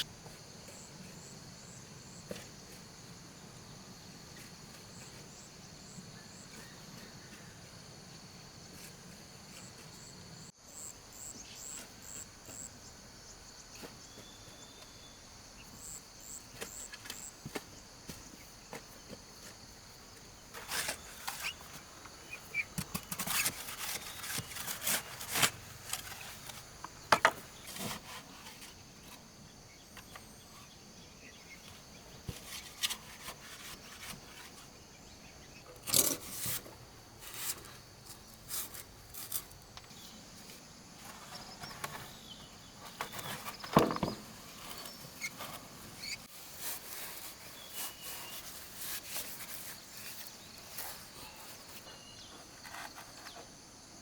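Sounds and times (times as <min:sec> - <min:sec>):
knocks and scraping of hand work: 0:16.5 - 0:29.3, 0:31.6 - 0:34.8, 0:35.6 - 0:53.5.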